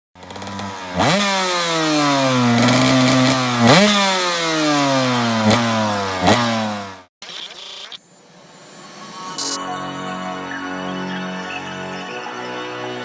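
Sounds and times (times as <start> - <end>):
two-stroke engine revving: 0.2 - 7.1.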